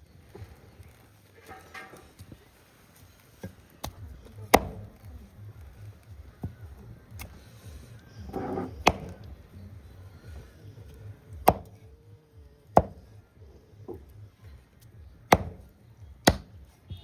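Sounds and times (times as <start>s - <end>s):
heavy blade chopping meat: 4.5s - 4.8s, 8.4s - 9.2s, 11.4s - 11.8s, 12.8s - 13.0s, 15.3s - 15.7s, 16.3s - 16.5s.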